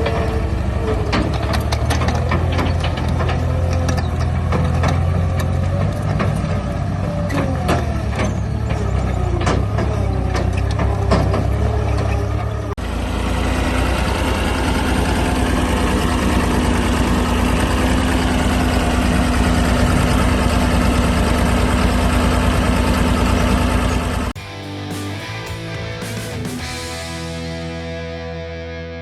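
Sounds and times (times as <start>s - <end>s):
machine parts clicking and squeaking: 0.0s - 12.7s
diesel engine running: 0.0s - 29.0s
steady whine: 12.6s - 29.0s.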